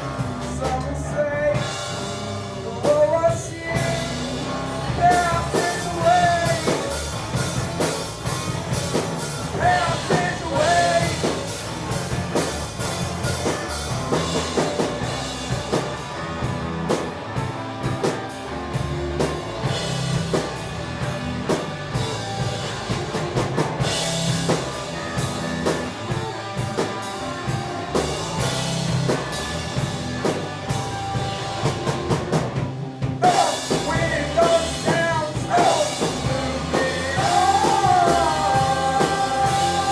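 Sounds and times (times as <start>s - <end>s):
indie rock band playing: 0.0s - 39.9s
person singing: 2.7s - 7.0s, 9.5s - 11.5s, 33.2s - 39.9s.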